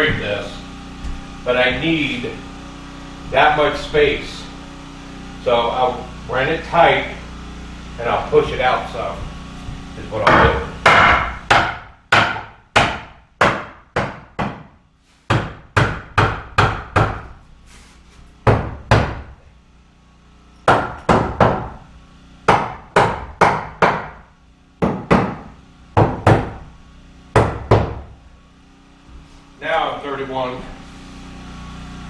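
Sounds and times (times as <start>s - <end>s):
hammer nailing into wood: 8.4s - 17.4s, 18.4s - 19.4s, 20.6s - 21.8s, 22.5s - 24.2s, 24.8s - 26.7s, 27.4s - 28.2s.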